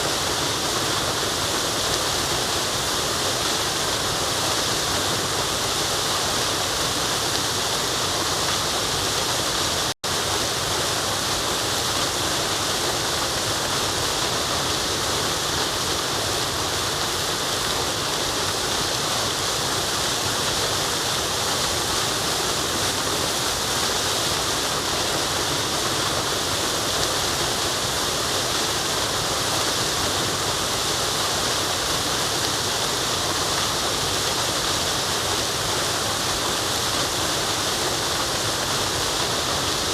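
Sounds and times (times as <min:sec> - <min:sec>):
waterfall rushing: 0:00.0 - 0:39.9.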